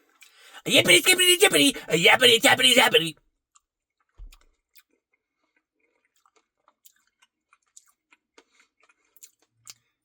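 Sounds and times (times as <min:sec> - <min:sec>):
person chewing with mouth clicks: 0:06.0 - 0:09.9.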